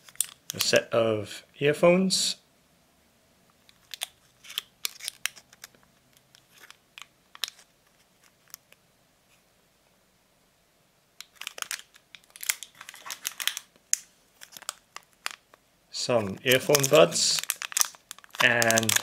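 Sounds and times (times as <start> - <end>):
plastic packaging crinkling: 0.0 - 0.7, 3.7 - 8.7, 11.2 - 19.0.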